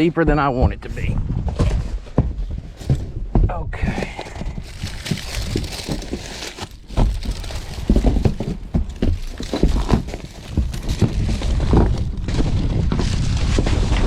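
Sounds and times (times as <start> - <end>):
wind rumble on microphone: 0.2 - 5.8, 10.6 - 14.0.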